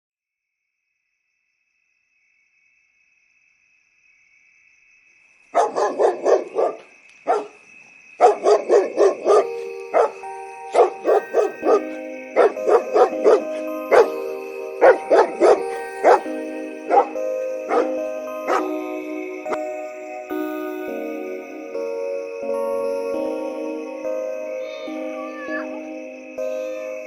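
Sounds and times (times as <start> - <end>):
dog barking in quick runs: 5.6 - 7.6
music with held notes: 8.8 - 27.0.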